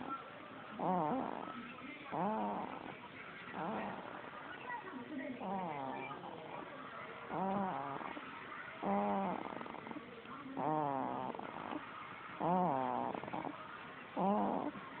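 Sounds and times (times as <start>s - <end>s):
quiet breathing: 0.0s - 15.0s
whistly snoring: 0.8s - 1.5s, 2.1s - 2.9s, 5.4s - 6.4s, 7.3s - 8.2s, 8.8s - 10.0s, 10.6s - 11.8s, 12.4s - 13.6s, 14.2s - 14.8s.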